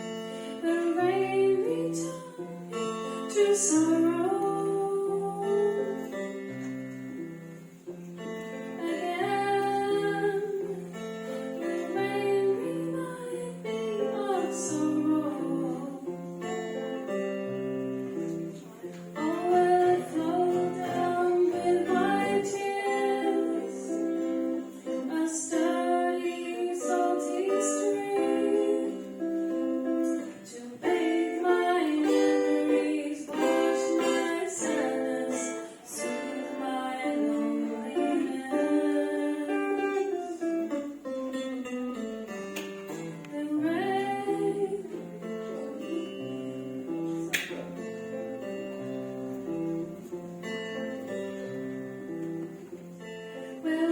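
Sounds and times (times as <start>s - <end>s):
woman singing: 0.0s - 6.5s, 8.6s - 16.6s, 18.6s - 40.8s, 42.9s - 47.6s, 53.4s - 53.9s
acoustic guitar strumming chords: 0.0s - 53.9s.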